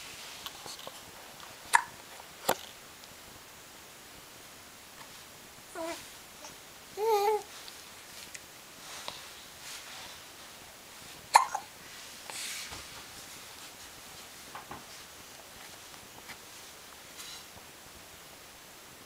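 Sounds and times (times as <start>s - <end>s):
child hiccuping: 1.7s - 2.0s, 11.3s - 11.7s.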